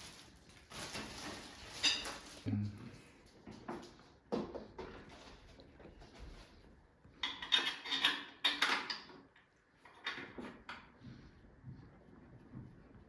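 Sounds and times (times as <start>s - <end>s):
clatter of small hard objects: 0.0s - 2.5s.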